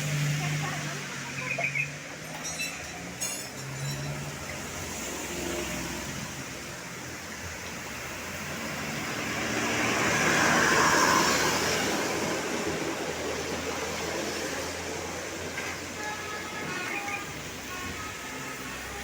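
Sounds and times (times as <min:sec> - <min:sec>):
road traffic: 0:00.0 - 0:19.0
vehicle passing close: 0:03.0 - 0:16.0.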